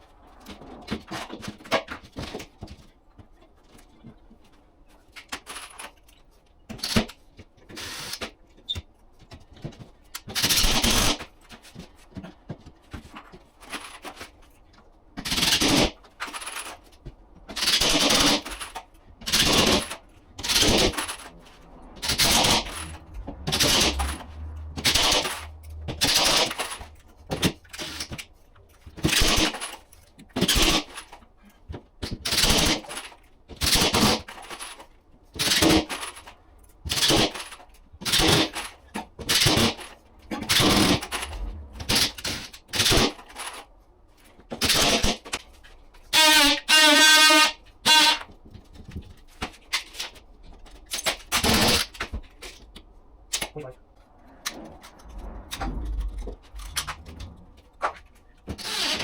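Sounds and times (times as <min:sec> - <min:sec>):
power driver driving screws: 0:58.5 - 0:59.0.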